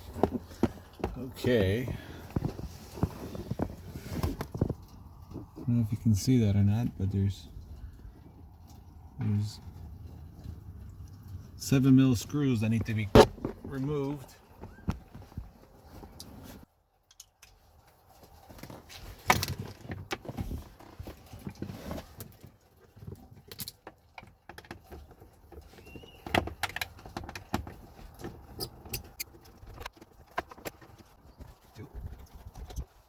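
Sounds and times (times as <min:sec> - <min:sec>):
hand tool clicks and knocks on screws: 0:17.0 - 0:17.6.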